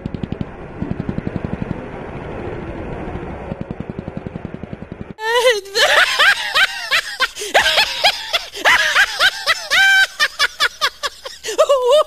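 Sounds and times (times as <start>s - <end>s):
high-pitched rapid laughter: 5.2s - 12.0s.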